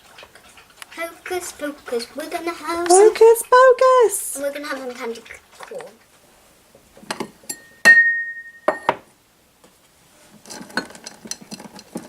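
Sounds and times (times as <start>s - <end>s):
glass clinking: 7.1s - 9.1s
glass ringing strike: 7.5s - 9.0s.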